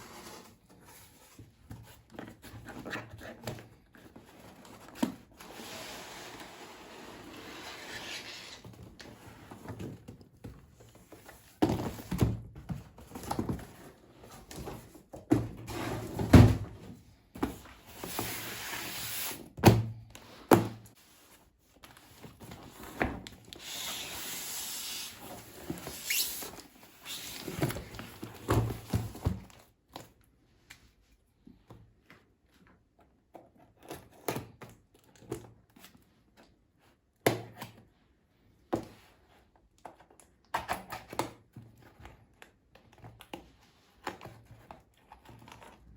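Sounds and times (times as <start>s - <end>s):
packaging rustling and sliding: 21.0s - 29.6s.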